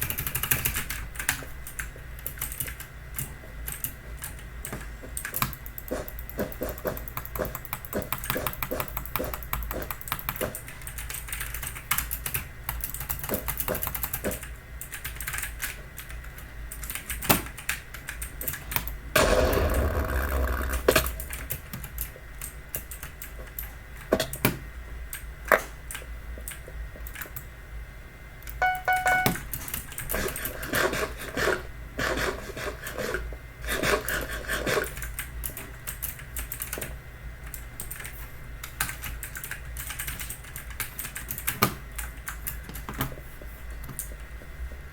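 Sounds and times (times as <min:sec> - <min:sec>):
short pitched beep: 0:28.6 - 0:29.4.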